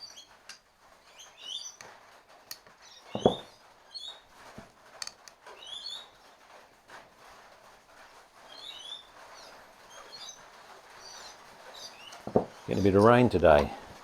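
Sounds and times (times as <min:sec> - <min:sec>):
birds chirping: 0:01.0 - 0:01.8, 0:02.8 - 0:04.3, 0:05.5 - 0:06.4, 0:08.4 - 0:14.0.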